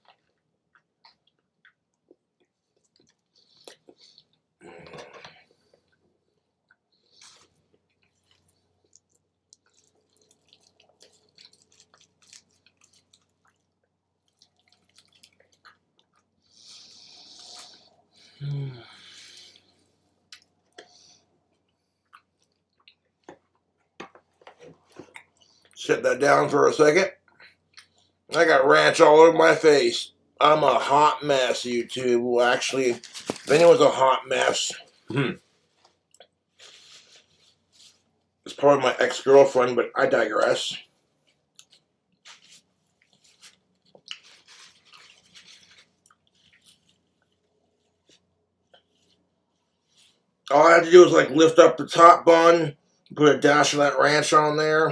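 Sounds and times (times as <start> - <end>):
man chewing food: 0.0 - 25.8, 27.2 - 28.4, 32.6 - 38.5, 40.9 - 50.5
person eating with rustling: 0.0 - 29.8, 30.4 - 39.2, 40.7 - 50.5.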